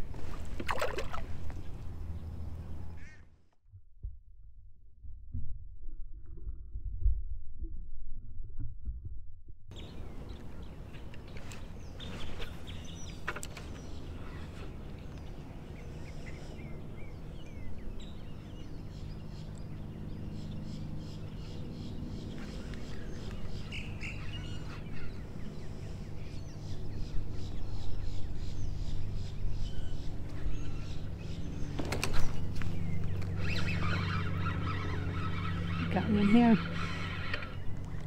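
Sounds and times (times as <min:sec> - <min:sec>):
steady low rumble: 0:00.0 - 0:38.0
small birds chirping: 0:09.7 - 0:38.0.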